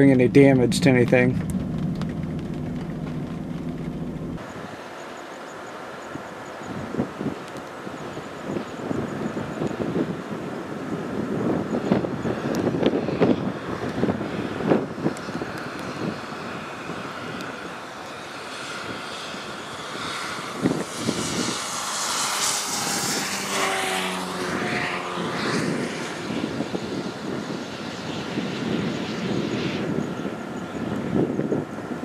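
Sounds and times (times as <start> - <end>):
aircraft engine drone passing: 0.0 - 32.0.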